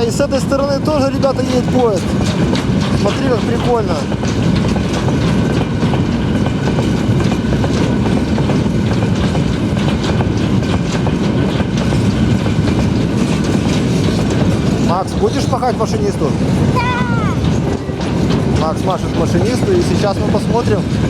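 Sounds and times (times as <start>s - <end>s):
freight train wagons rumbling: 0.0s - 21.0s
wheels clattering over rails: 0.0s - 21.0s.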